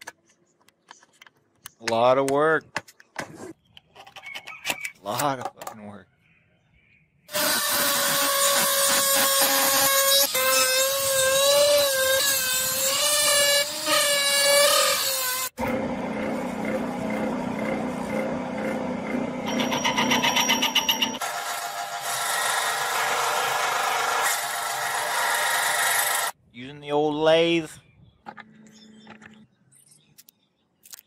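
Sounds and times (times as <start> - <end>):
power tool whining on metal: 7.3 - 26.4
low machine hum: 15.6 - 21.0.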